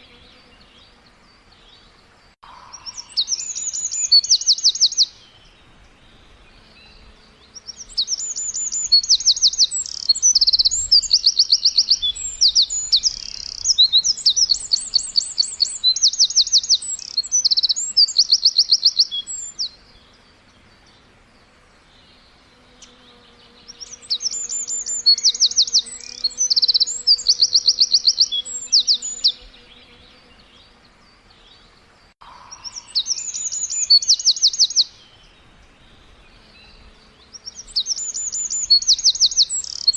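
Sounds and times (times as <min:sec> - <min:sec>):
songbird trilling: 0:02.4 - 0:05.5, 0:07.6 - 0:19.8, 0:23.6 - 0:29.6, 0:32.2 - 0:35.2, 0:36.6 - 0:39.9.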